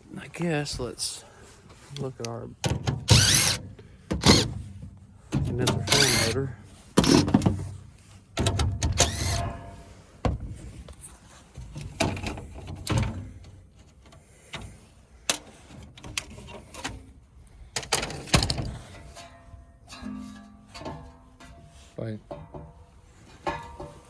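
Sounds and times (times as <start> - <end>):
metal scraping: 3.0 - 4.7, 5.5 - 7.5, 8.9 - 10.0, 18.0 - 24.0.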